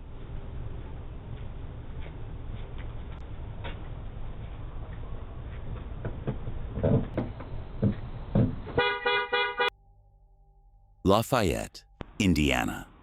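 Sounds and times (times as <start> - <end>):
car horn: 8.8 - 9.8.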